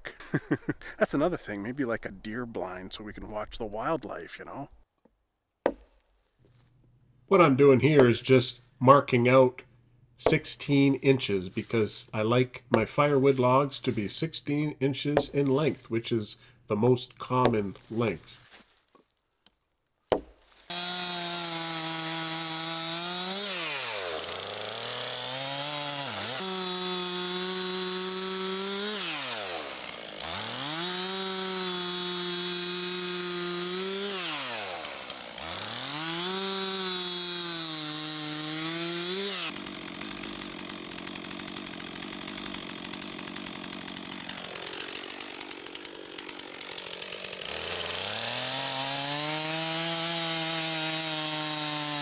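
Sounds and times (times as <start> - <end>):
chainsaw cutting log: 10.2 - 15.9, 17.4 - 18.6, 20.1 - 52.0.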